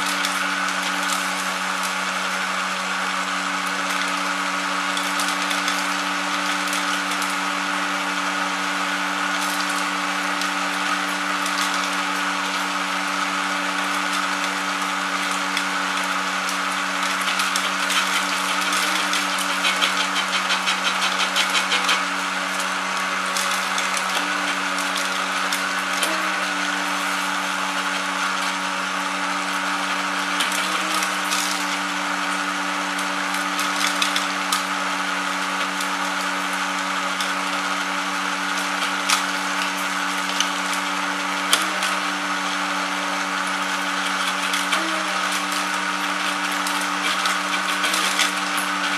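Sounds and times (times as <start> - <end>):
small motor humming: 9.0 - 48.9
machine rattling: 17.0 - 22.2.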